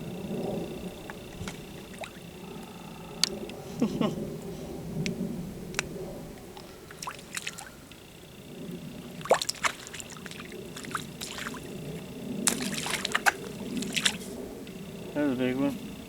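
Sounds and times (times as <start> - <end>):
fish splashing in water: 1.0 - 2.4, 6.5 - 7.8, 9.0 - 14.4.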